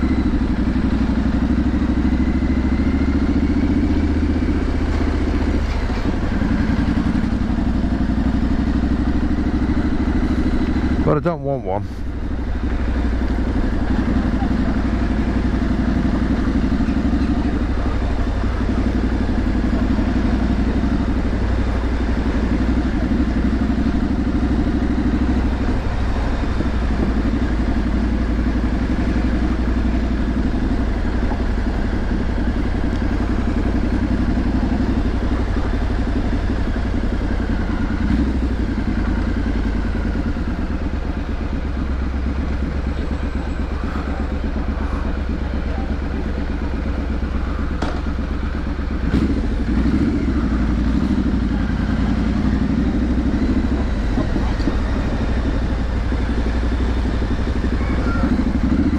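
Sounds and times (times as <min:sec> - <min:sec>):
motorcycle engine running at low revs: 0:00.0 - 0:58.9.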